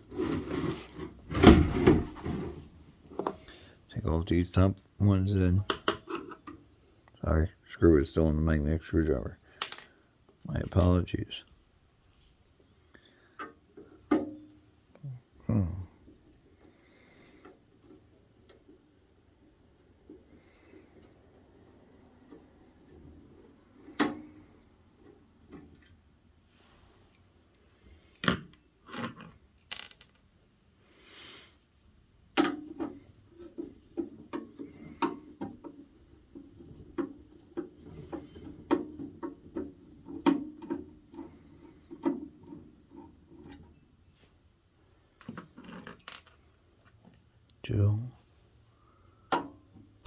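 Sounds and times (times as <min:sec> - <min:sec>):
parts knocking when handled: 0:32.4 - 0:43.7.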